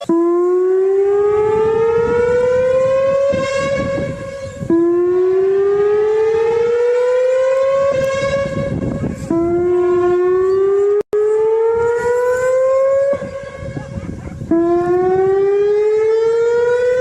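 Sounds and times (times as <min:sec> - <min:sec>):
emergency siren rising sweep: 0:00.0 - 0:17.0.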